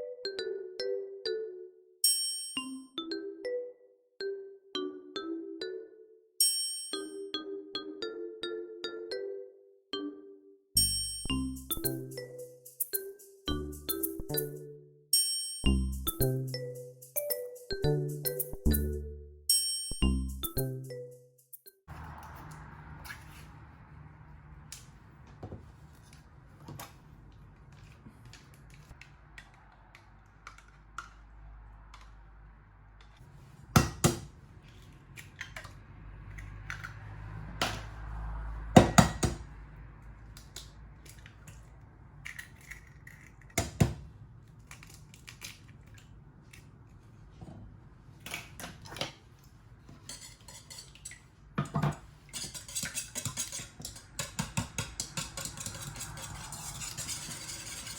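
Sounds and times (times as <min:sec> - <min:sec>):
dishes and cutlery clinking: 0:49.9 - 0:57.9.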